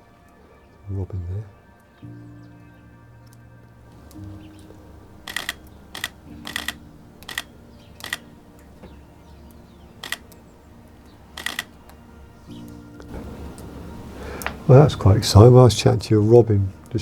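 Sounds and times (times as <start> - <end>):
camera shutter clicks: 5.2 - 8.3, 10.0 - 10.4, 11.4 - 11.8.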